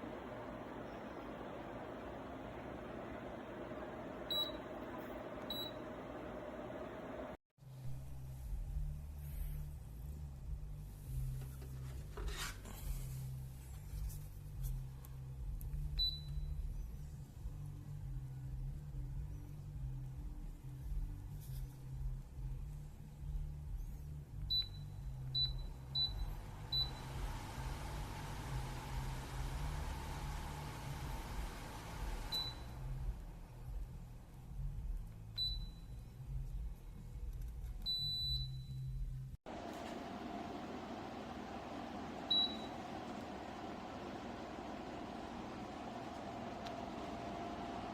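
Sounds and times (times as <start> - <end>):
tower fan humming: 0.0 - 7.4, 25.4 - 34.0, 39.5 - 47.9.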